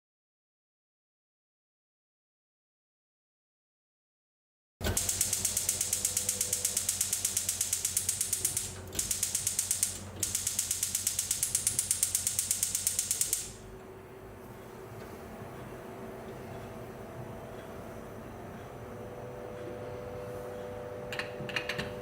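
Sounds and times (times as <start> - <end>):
rapid mechanical clicking: 4.8 - 13.6.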